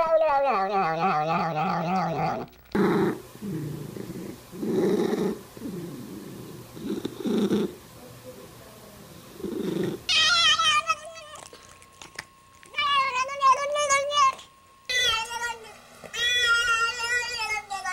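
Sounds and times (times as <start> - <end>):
cat growling: 0.0 - 7.8, 9.4 - 11.7
cat yowling: 10.1 - 11.5.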